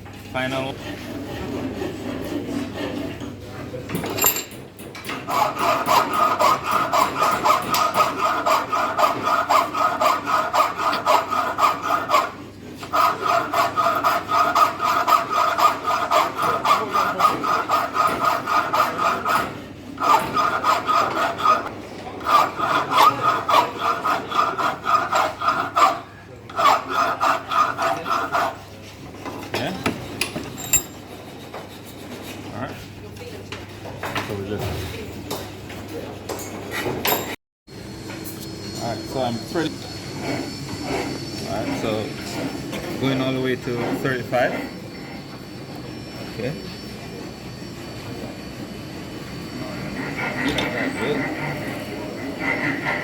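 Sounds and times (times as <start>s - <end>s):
hand file rasping on metal: 0.6s - 3.8s, 5.0s - 32.8s, 39.1s - 45.3s, 49.6s - 53.0s.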